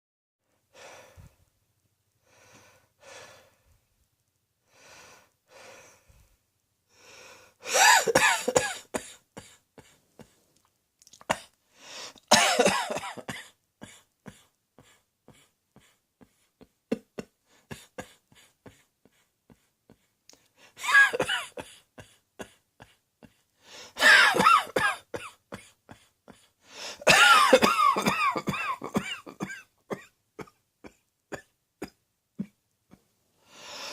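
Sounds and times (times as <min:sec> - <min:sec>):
person coughing: 0:07.7 - 0:10.4, 0:12.3 - 0:18.9, 0:20.8 - 0:23.4, 0:24.0 - 0:32.6.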